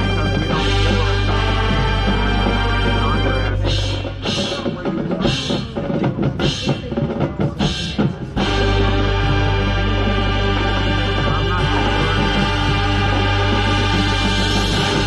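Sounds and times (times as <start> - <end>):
marching band sustained chord: 0.0 - 5.4, 8.4 - 15.0
drum line percussion: 0.0 - 15.0.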